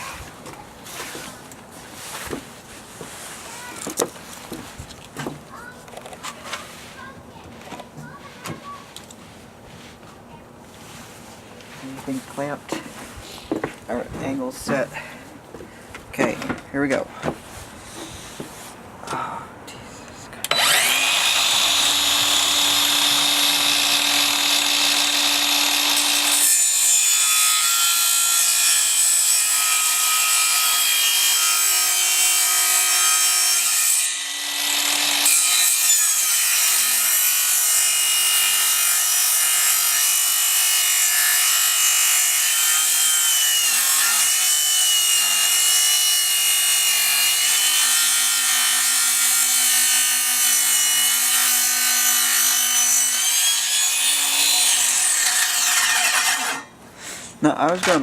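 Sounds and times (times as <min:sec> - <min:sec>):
miter saw cutting board: 0:20.4 - 0:56.7.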